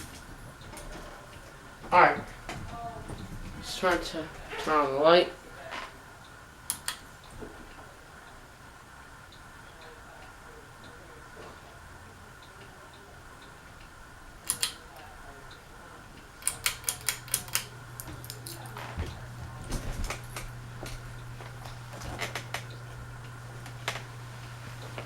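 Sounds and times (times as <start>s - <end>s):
ceiling fan humming: 0.0s - 25.0s
switch clicks: 6.7s - 7.1s, 14.4s - 14.8s, 16.4s - 18.6s.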